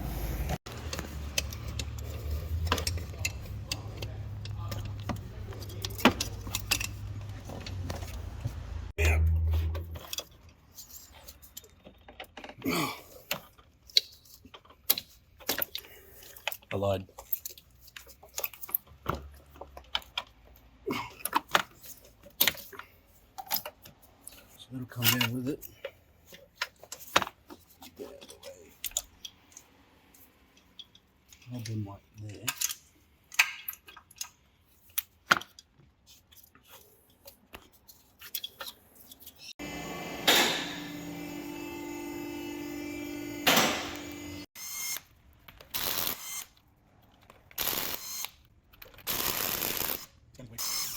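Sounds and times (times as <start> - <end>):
steady mechanical hum: 39.6 - 44.5.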